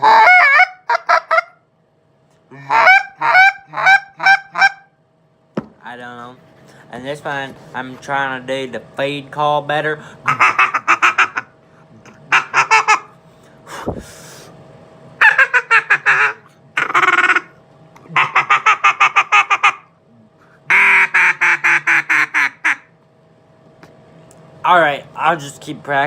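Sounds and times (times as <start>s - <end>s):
duck call chattering: 0.0s - 1.6s, 2.6s - 4.9s, 10.3s - 13.1s, 15.2s - 19.9s, 20.7s - 22.9s
knock: 5.6s - 5.8s.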